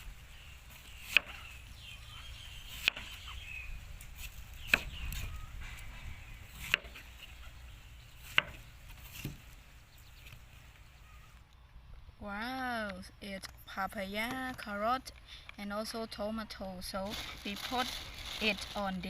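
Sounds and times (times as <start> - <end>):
knife chopping on wooden board: 8.2 - 9.4.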